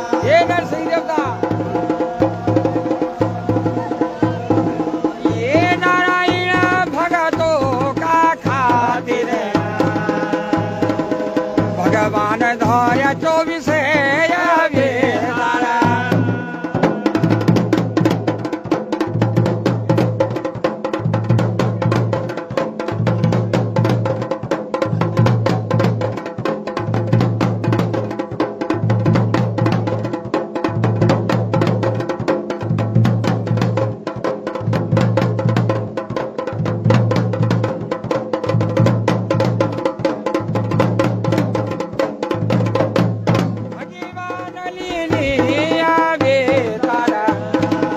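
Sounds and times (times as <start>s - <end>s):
person singing: 0.0s - 18.8s, 43.7s - 47.9s
drums playing fast rhythm: 0.0s - 47.9s.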